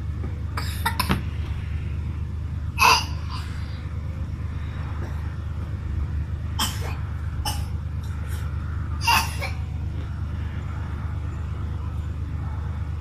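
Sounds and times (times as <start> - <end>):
low rumble: 0.0 - 13.0
person coughing: 9.0 - 9.6.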